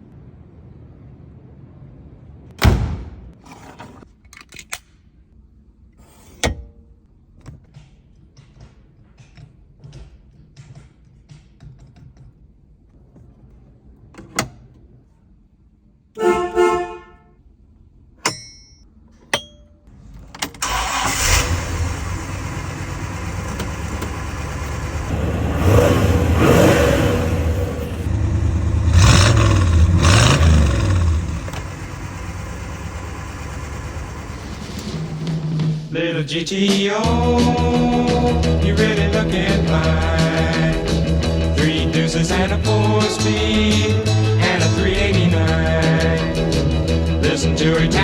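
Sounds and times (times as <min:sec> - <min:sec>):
car horn honk: 0:16.2 - 0:17.3
car engine starting and revving: 0:20.6 - 0:35.6.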